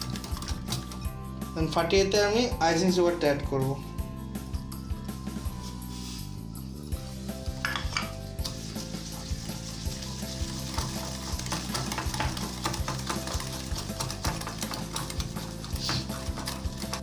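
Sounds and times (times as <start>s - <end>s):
whisk beating in a bowl: 0.0s - 1.0s, 7.2s - 17.0s.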